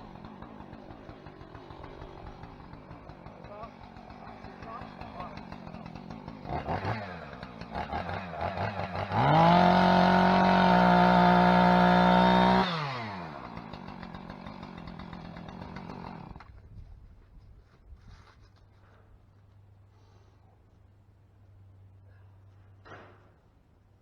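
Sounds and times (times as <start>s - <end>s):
chainsaw revving and idling: 0.0s - 16.6s.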